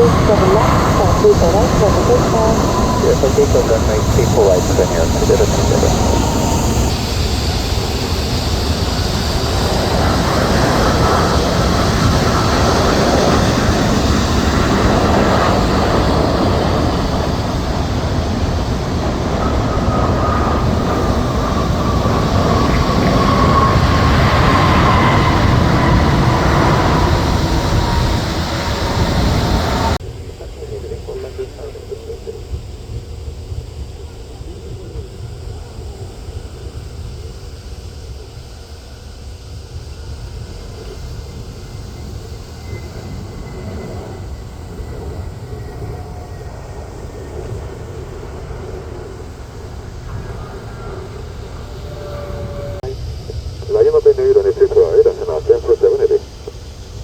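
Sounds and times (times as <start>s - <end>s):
jet engines passing: 0.0s - 57.0s.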